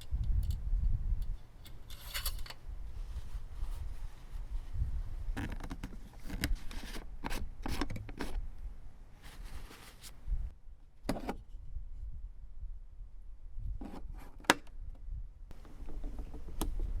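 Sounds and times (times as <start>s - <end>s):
rubbing and scraping strokes: 9.2s - 10.2s.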